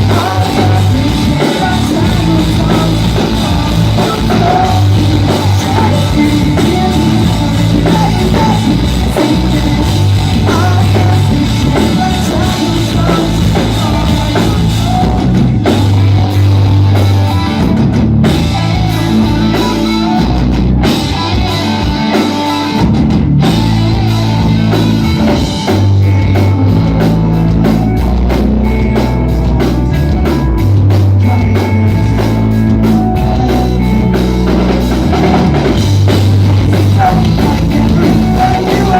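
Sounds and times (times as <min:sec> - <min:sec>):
person singing lead vocal: 0:00.0 - 0:17.3, 0:18.3 - 0:22.8, 0:31.1 - 0:38.9
bass guitar: 0:00.0 - 0:38.9
distorted electric guitars: 0:00.0 - 0:38.9
driving drum kit: 0:00.0 - 0:38.9.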